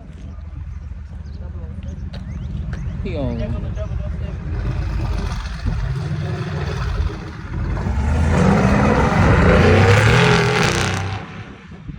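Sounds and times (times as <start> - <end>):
car engine accelerating: 4.3 - 11.8.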